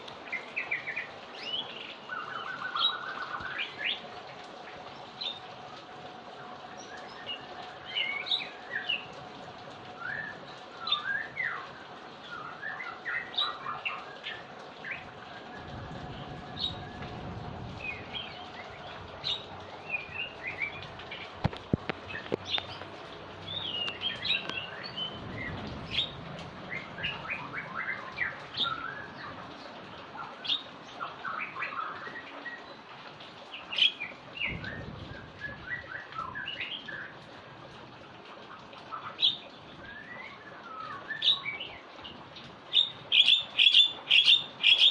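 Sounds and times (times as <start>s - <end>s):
heavy rain hiss: 0.0s - 44.9s
small birds chirping: 10.0s - 37.2s
low rumbles: 15.1s - 29.1s.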